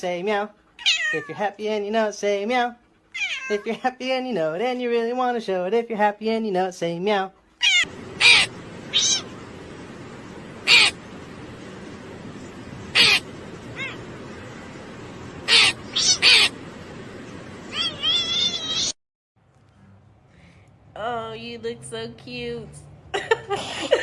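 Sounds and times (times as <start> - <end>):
small animal high-pitched calls: 0.8 - 1.4, 3.1 - 3.6, 7.6 - 9.4, 10.6 - 11.1, 12.8 - 14.1, 15.4 - 16.6, 17.7 - 19.0.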